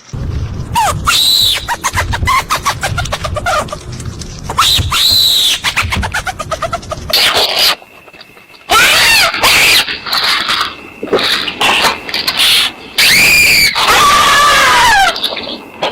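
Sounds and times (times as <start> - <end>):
shrill squealing cries: 0.8 - 3.8, 4.5 - 7.8, 8.7 - 10.4, 12.3 - 15.6.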